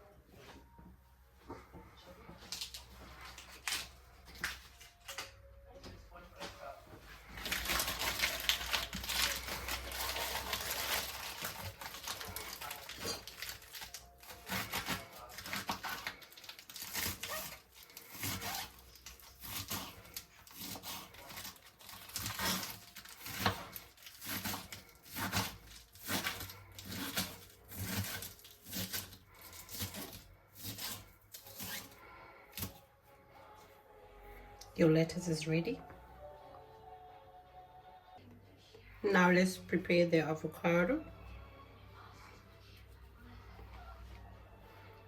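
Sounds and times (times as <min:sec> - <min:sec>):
lettuce leaves crunching by hand: 0:07.2 - 0:32.8.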